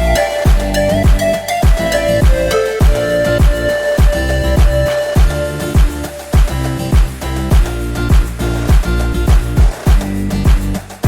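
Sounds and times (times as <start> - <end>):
sustained electronic melody: 0.0 - 6.8
deep kick drums: 0.0 - 10.8.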